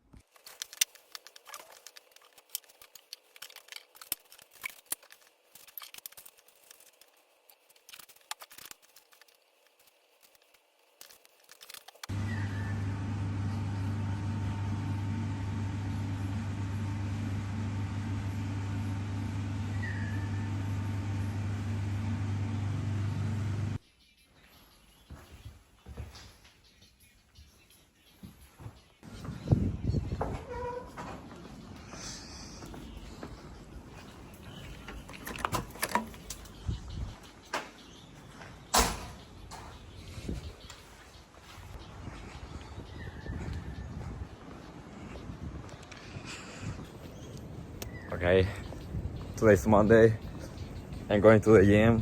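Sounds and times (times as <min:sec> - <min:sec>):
clicks and crinkling: 0:00.0 - 0:12.1, 0:34.6 - 0:36.6
low mechanical hum: 0:00.7 - 0:23.8.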